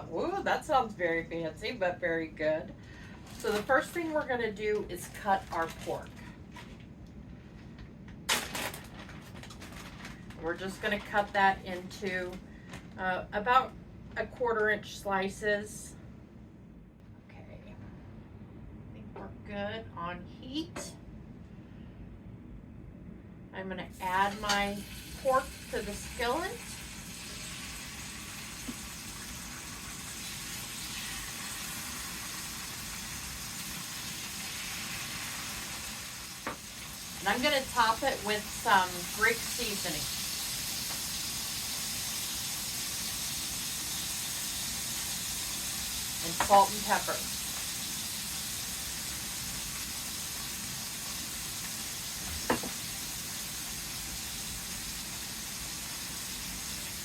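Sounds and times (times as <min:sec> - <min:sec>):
meat sizzling in a skillet: 0:24.3 - 0:57.0.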